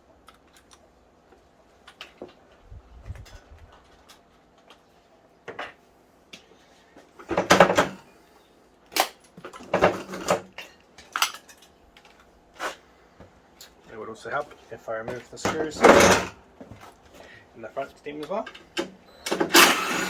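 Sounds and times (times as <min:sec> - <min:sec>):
metal clanking and rattling: 0:15.5 - 0:16.4.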